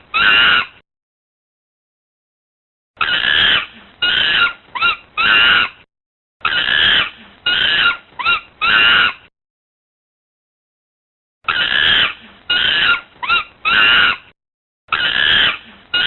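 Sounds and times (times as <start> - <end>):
monkey calls: 0.1 - 0.8, 3.0 - 5.8, 6.4 - 9.2, 11.5 - 14.3, 14.9 - 16.0.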